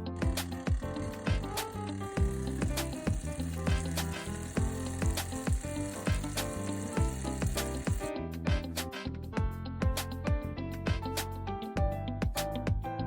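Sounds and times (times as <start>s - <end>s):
pitch-dropping kick drums: 7.0s - 8.7s.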